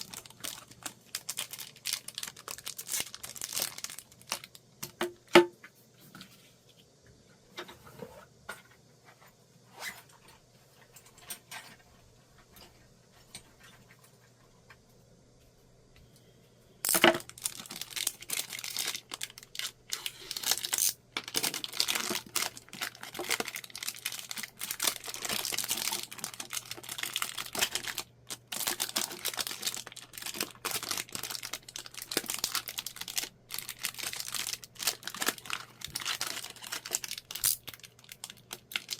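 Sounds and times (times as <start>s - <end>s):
packaging ripping: 0.0s - 4.6s, 16.9s - 38.9s
wrapping crinkling and tearing: 0.0s - 4.7s, 16.9s - 38.9s.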